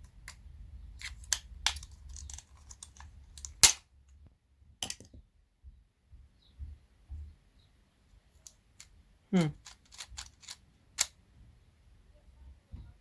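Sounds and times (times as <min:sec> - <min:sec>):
plastic and metal parts clicking: 0:01.0 - 0:03.8, 0:09.6 - 0:11.2.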